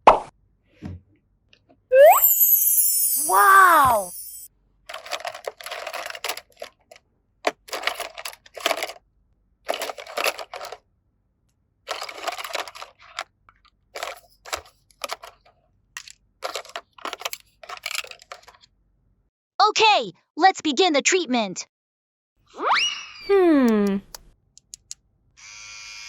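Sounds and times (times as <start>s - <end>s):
plastic packaging rustling: 4.9s - 9.0s, 9.7s - 10.8s, 11.9s - 13.2s.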